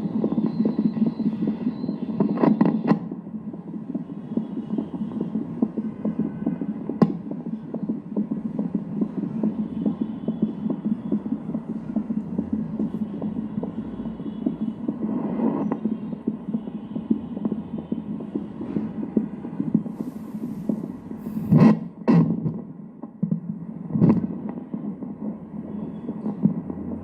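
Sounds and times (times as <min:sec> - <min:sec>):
steady hum: 0:19.8 - 0:21.8
fetal heartbeat pulsing: 0:20.6 - 0:22.6.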